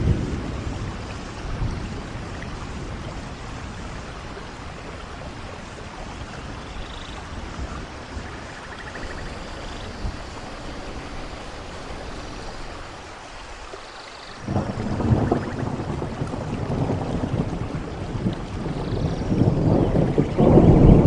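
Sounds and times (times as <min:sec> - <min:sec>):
steady rain: 0:00.0 - 0:21.0
thunder rumbling: 0:08.8 - 0:21.0.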